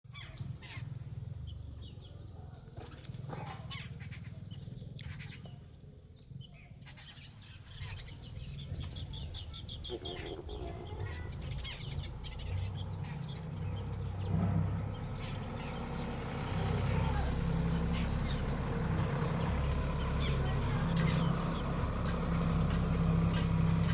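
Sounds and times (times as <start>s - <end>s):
bird chirping: 6.4s - 23.9s.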